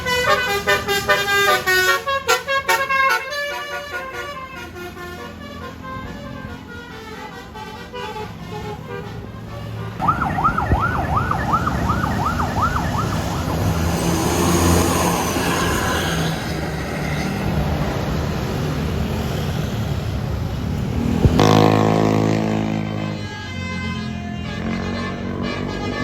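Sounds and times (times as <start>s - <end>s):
bus horn whooping: 0.0s - 10.2s, 11.7s - 17.0s, 21.3s - 26.0s
bus engine and tyres passing: 0.0s - 26.0s.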